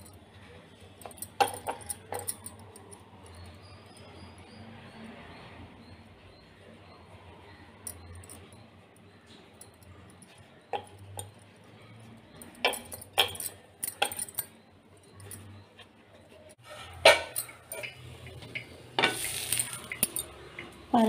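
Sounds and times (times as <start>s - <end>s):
metal utensils clinking on dishes: 0.9s - 4.2s, 12.4s - 21.0s.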